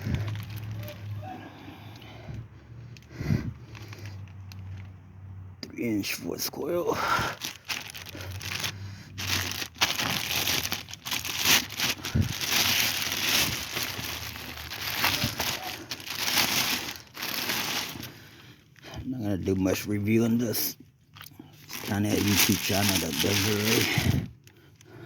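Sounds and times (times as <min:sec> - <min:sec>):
plastic packaging crinkling: 0:00.0 - 0:01.4, 0:03.6 - 0:04.9, 0:07.0 - 0:18.5, 0:21.6 - 0:24.5.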